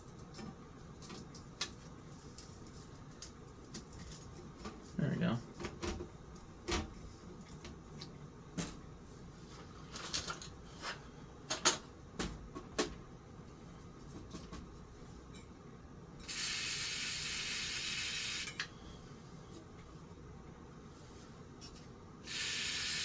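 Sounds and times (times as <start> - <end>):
aerosol spray hiss: 16.3 - 18.5, 22.3 - 23.0.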